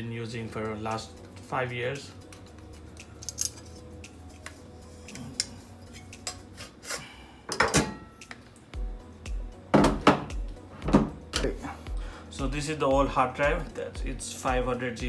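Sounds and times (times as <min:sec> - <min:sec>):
music with pulsing beat: 0:08.8 - 0:14.8.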